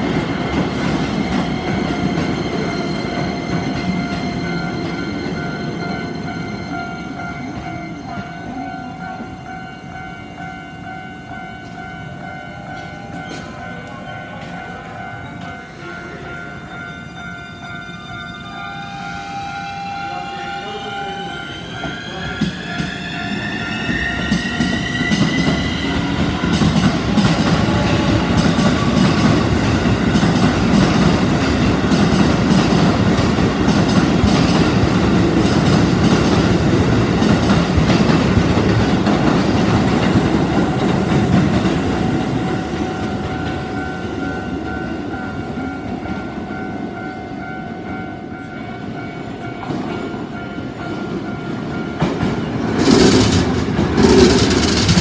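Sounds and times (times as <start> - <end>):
train wheels clattering on rails: 21.8 - 44.8, 49.5 - 55.0.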